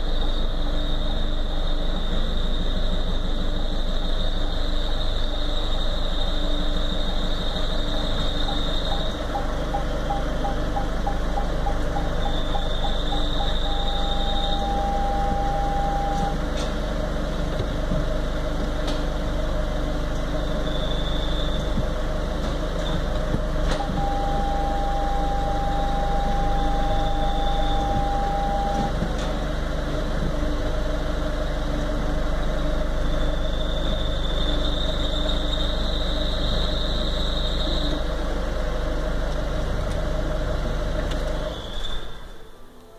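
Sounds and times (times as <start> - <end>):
steady mid-pitched tone: 0.0 - 16.5, 19.2 - 38.3
diesel engine idling: 0.0 - 42.9
faint high-pitched whine: 23.7 - 38.3.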